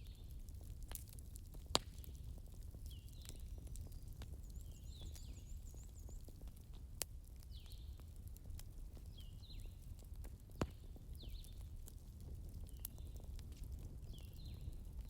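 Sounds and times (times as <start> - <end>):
fire popping: 0.0 - 15.0
wood fire crackling: 0.0 - 15.0.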